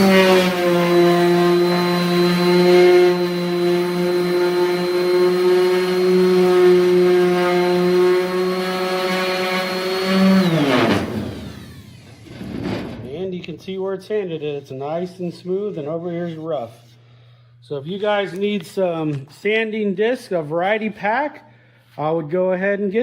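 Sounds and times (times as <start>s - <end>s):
electric sander running: 0.0s - 13.1s
sander winding down: 0.0s - 13.4s.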